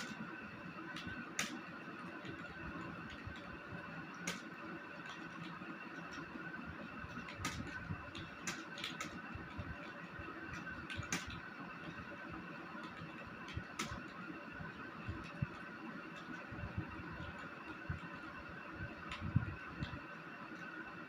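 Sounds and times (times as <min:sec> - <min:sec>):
keyboard keys clicking: 0:07.1 - 0:11.5, 0:15.1 - 0:20.1.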